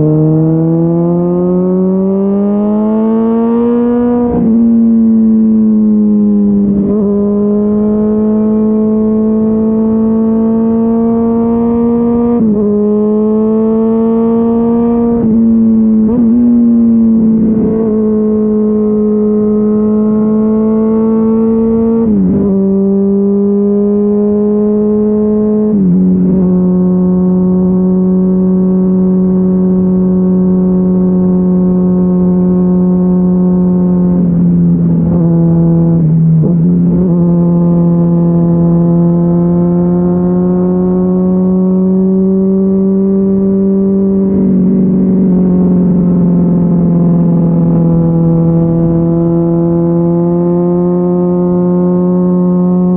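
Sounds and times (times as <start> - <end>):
motorcycle engine running: 42.6 - 51.6.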